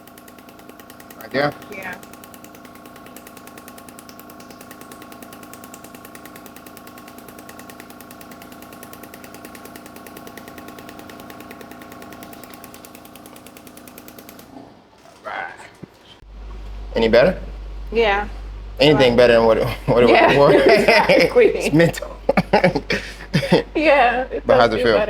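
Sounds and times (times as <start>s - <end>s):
fast clicking pulses: 0.0s - 14.6s, 19.9s - 25.0s
steady machine hum: 0.0s - 14.6s, 16.2s - 25.0s.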